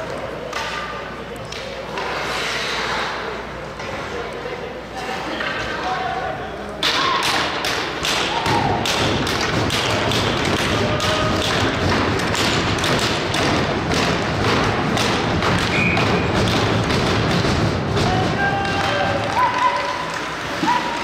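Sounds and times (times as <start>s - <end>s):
crowd and rink din: 0.0s - 21.0s.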